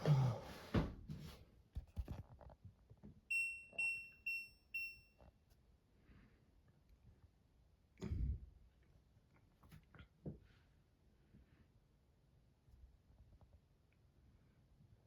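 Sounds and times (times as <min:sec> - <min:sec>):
washing machine high beeps: 0:03.3 - 0:05.2.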